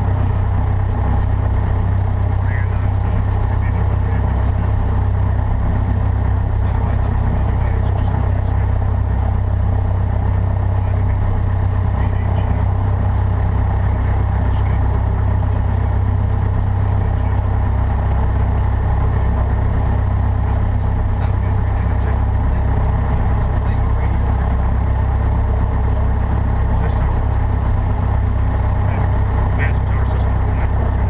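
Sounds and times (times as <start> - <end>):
aircraft piston engine droning: 0.0 - 31.0.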